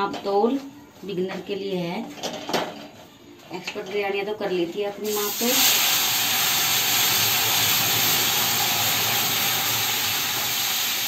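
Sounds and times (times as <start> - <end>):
water sizzling in hot pan: 5.0 - 11.0.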